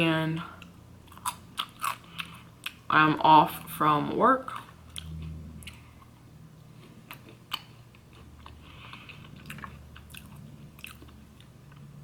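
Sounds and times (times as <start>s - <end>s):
person chewing fries: 0.6s - 2.9s, 4.5s - 12.0s.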